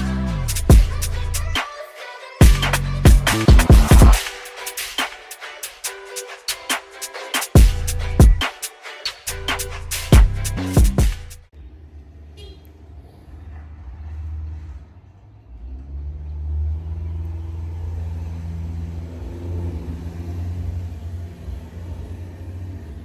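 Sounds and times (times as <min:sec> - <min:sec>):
car engine running: 0:02.4 - 0:04.2, 0:16.8 - 0:23.0.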